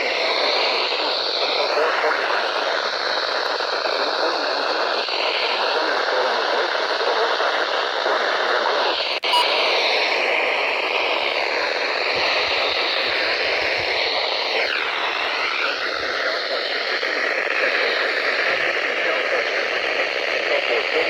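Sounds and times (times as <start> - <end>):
radio static hiss: 0.0 - 21.0
warbling whistle: 9.2 - 9.8.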